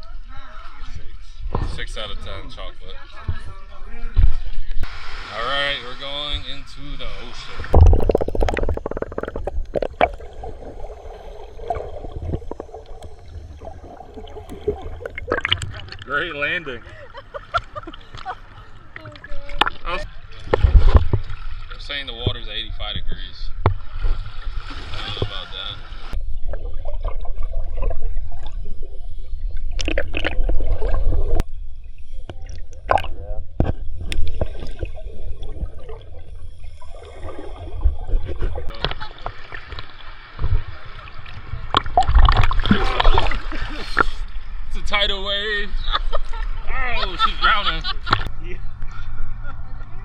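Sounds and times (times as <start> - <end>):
muffled wash of water: 3.1 - 50.0
sea water splashing and gurgling: 4.8 - 44.7.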